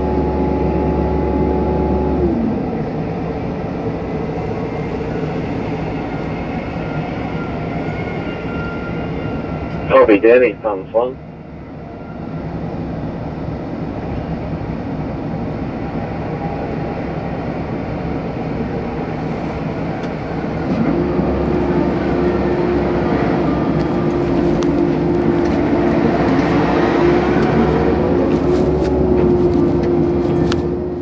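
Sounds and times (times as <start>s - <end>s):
excavator diesel engine running: 12.7s - 31.0s
steady machine whine: 18.5s - 31.0s.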